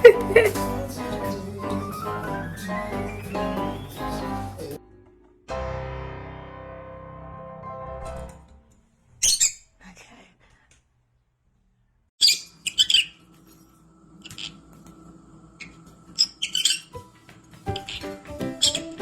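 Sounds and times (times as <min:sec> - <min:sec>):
bird squawking and chirping: 0:09.2 - 0:09.6, 0:12.2 - 0:13.2, 0:16.2 - 0:16.9.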